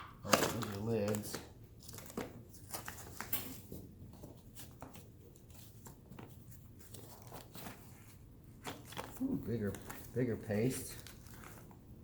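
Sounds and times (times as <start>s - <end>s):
jars clicking and rustling: 0.0s - 1.4s.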